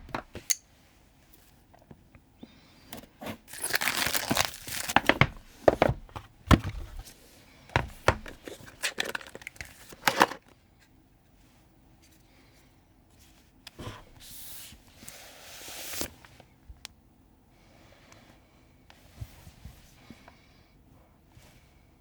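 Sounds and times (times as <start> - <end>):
packaging rustling: 3.2 - 7.1, 7.8 - 10.5
packaging ripping: 3.5 - 5.3, 8.4 - 10.4.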